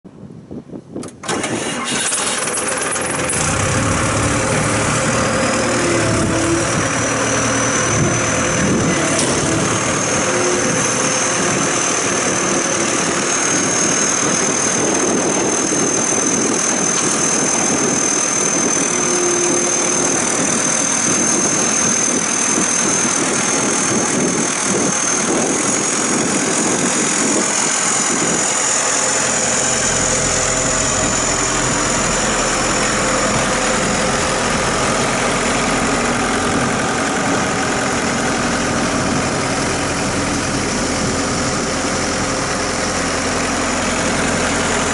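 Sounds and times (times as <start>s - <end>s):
diesel engine idling: 1.2s - 44.9s
high-pitched whine: 3.1s - 24.4s, 27.3s - 39.2s
deep low rumble: 3.2s - 22.2s, 23.2s - 44.9s.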